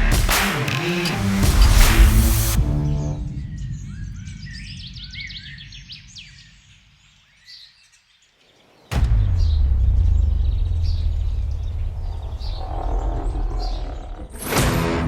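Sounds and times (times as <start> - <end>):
electronic music: 0.0 - 3.6
loud low rumble: 1.1 - 6.5, 9.0 - 15.0
small birds chirping: 2.9 - 14.5.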